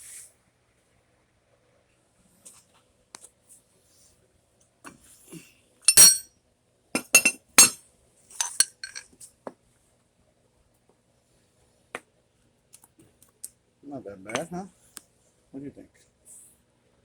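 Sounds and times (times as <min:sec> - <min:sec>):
metal tools clinking: 0:05.9 - 0:06.2, 0:07.0 - 0:07.8, 0:08.4 - 0:09.0.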